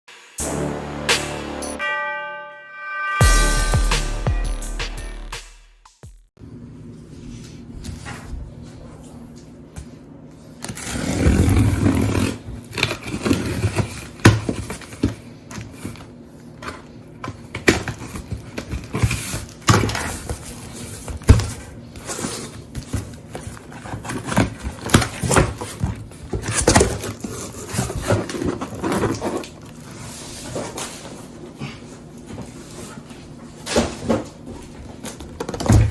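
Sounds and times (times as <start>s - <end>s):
cardboard scraping and rustling: 10.7s - 16.0s, 17.4s - 31.4s.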